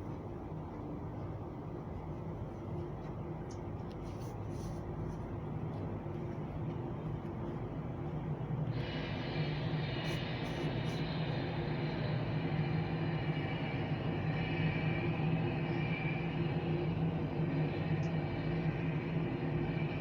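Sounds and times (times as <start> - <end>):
jet engines rumbling: 8.6 - 20.0
high turbine whine: 8.7 - 20.0.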